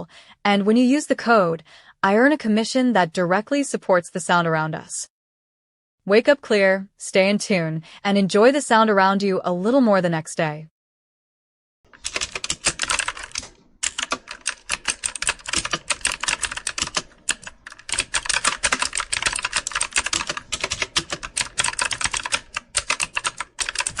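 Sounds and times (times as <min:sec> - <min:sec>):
fast keyboard typing: 0:11.9 - 0:24.0.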